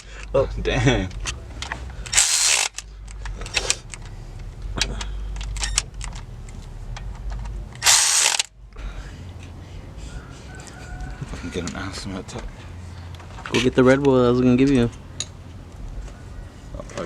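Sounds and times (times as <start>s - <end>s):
tool clicks: 1.1s - 4.1s, 4.8s - 8.5s
ratchet wrench ratcheting: 1.1s - 8.5s.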